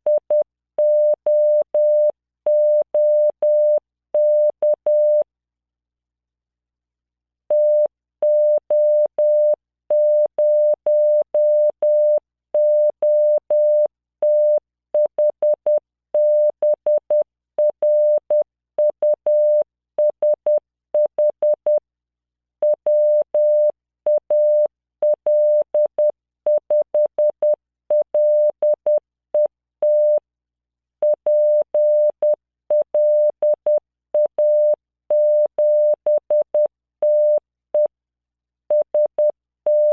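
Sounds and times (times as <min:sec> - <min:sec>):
morse code tone: 0:31.0 - 0:37.9, 0:38.7 - 0:39.9.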